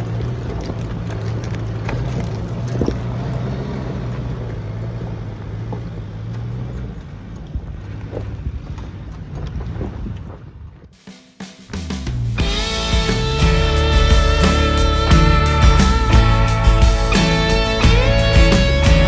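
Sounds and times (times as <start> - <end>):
truck engine running: 12.1 - 19.0.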